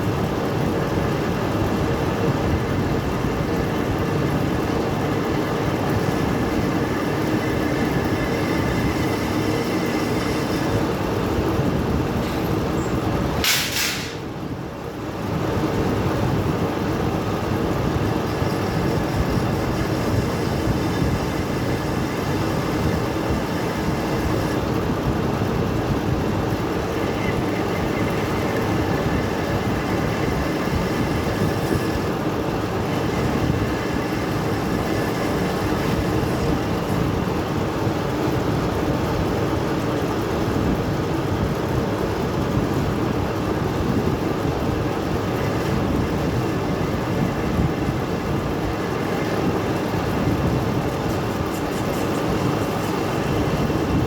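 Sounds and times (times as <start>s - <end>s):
lathe running: 0.0s - 13.3s, 14.8s - 41.1s, 43.0s - 54.0s
brief sharp hiss: 13.4s - 14.3s.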